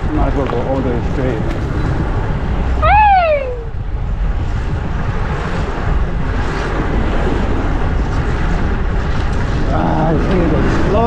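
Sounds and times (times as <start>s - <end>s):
street traffic: 0.0s - 11.0s
wind rushing over microphone: 0.0s - 11.0s.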